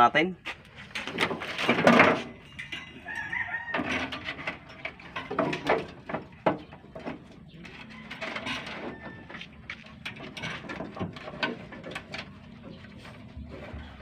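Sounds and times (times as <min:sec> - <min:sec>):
chickens clucking: 0:02.3 - 0:14.0
rooster crowing: 0:02.8 - 0:04.4, 0:07.8 - 0:09.6.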